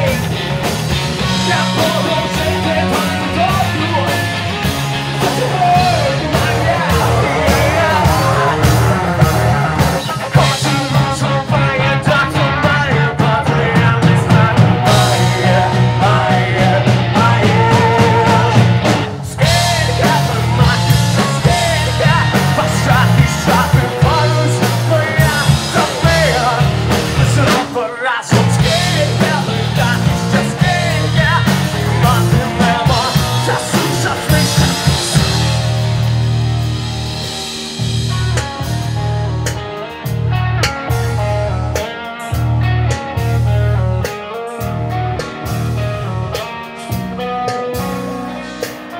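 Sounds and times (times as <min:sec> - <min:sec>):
person singing: 0:00.0 - 0:36.0, 0:44.0 - 0:48.9
rock band playing: 0:00.0 - 0:48.9.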